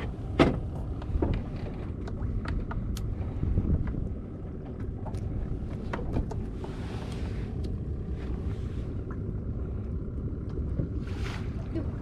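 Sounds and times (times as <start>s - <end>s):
steady low rumble: 0.0s - 12.0s
wind buffeting the microphone: 2.4s - 12.0s.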